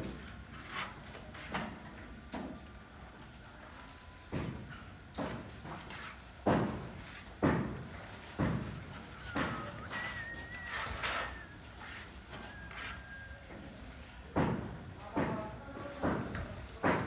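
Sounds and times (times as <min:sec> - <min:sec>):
heavy knocks from building work: 0:06.4 - 0:10.2, 0:14.4 - 0:17.0
faint thin whistle: 0:08.9 - 0:13.9.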